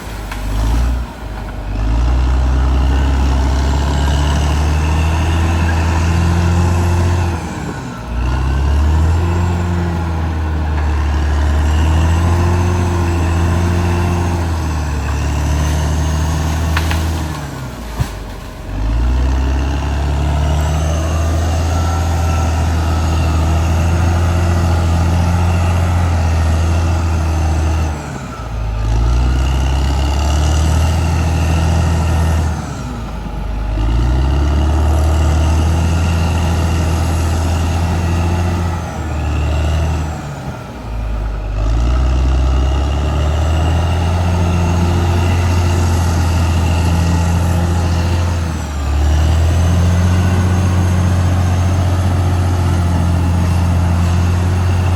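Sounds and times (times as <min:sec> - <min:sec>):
bulldozer diesel engine under load: 0:00.0 - 0:54.9.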